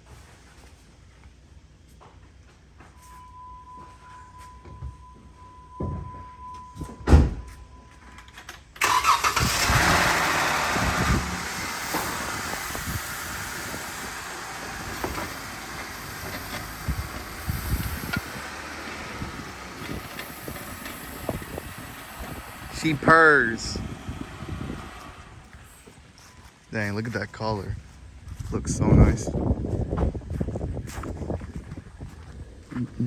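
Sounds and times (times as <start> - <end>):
high warning beep: 2.9 - 8.1
car engine starting and idling: 8.0 - 27.4.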